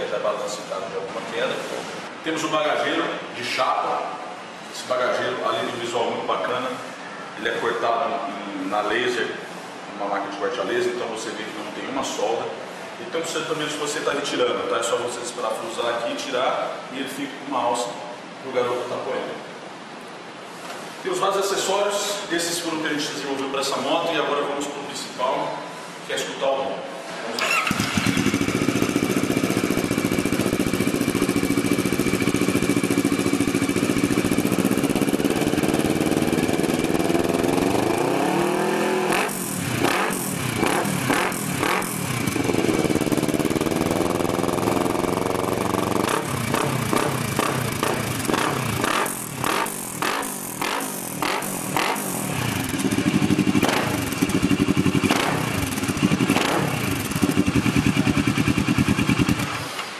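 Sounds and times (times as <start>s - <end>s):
motorcycle engine revving: 27.4s - 59.7s.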